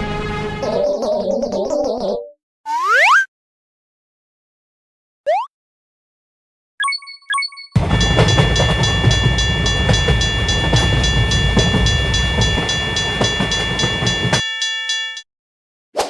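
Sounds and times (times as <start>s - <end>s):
train rumbling and clattering: 7.8s - 14.4s
level crossing bell ringing: 7.8s - 15.2s.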